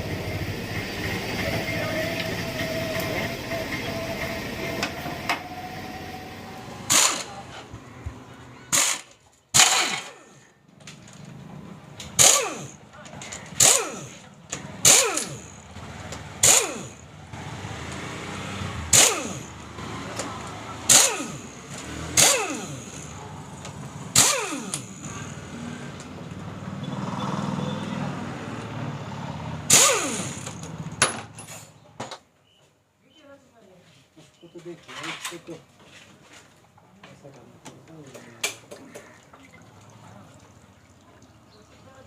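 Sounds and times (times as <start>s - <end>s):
metal tools clanking: 29.8s - 32.0s, 34.8s - 35.6s.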